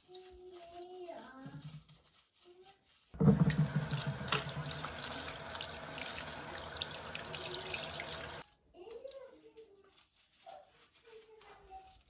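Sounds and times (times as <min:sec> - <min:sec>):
water running into a sink: 0:03.2 - 0:08.4
water tap turned on: 0:03.2 - 0:08.4.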